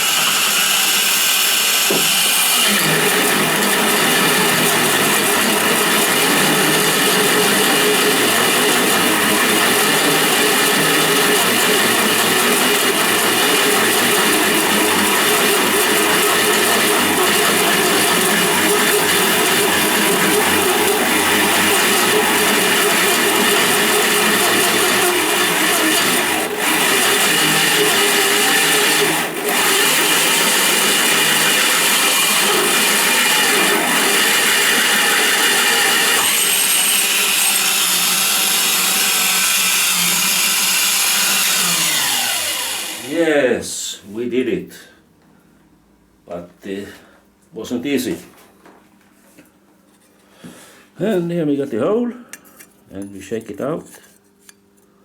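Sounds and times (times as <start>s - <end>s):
electric drill with hole saw grinding: 0.0s - 43.4s.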